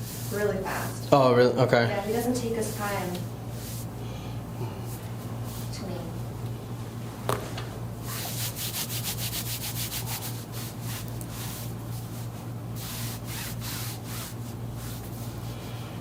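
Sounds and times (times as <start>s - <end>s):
steady low hum: 0.0s - 16.0s
quick rubbing strokes: 8.0s - 15.6s.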